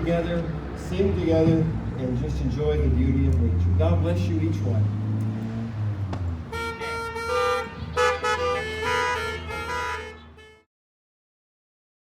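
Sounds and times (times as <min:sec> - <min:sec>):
car horns honking: 0:06.3 - 0:10.7.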